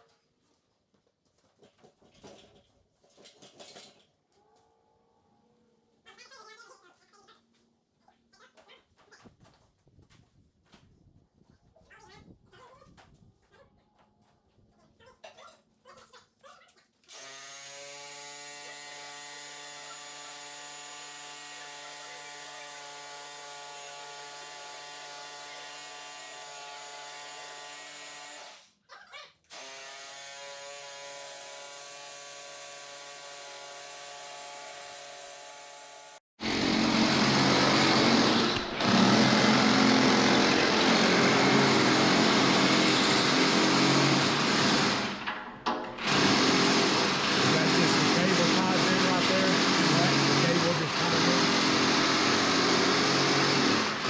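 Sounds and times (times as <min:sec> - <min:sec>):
harsh power tool running: 0:17.1 - 0:28.7, 0:29.5 - 0:54.0
machine hum: 0:36.4 - 0:54.0.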